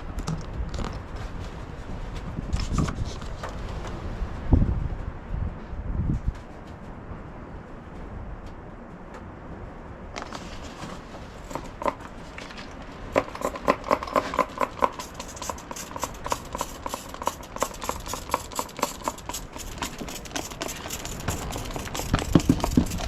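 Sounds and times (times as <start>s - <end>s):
steady hiss: 13.0s - 23.0s
sharp rapid clicks: 13.2s - 23.0s.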